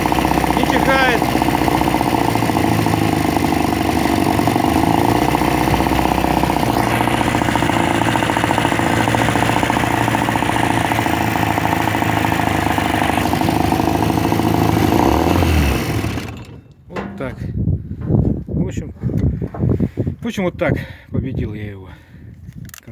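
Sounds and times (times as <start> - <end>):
outboard motor running: 0.0 - 17.5.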